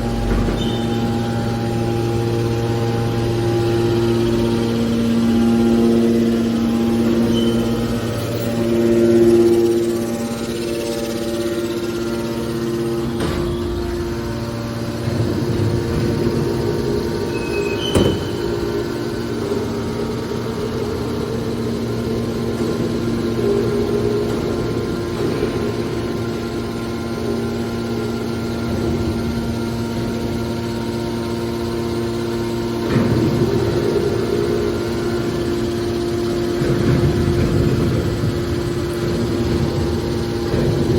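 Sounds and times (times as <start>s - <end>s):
can baler machine humming: 0.0s - 40.9s.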